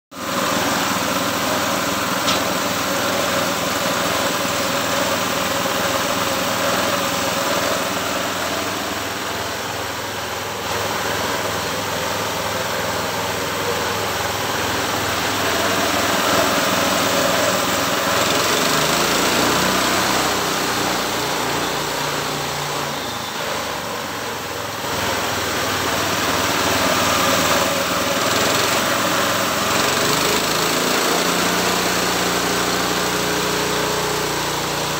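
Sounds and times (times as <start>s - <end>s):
sawmill engine running: 0.1s - 34.9s.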